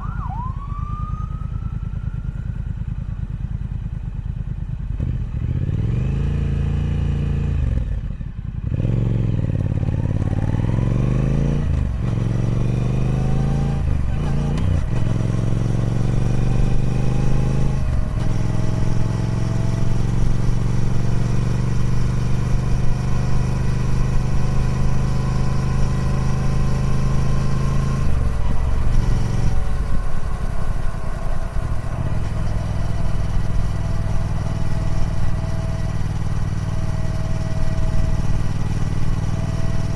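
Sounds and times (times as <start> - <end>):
motorcycle engine upshifting: 10.0 - 39.9.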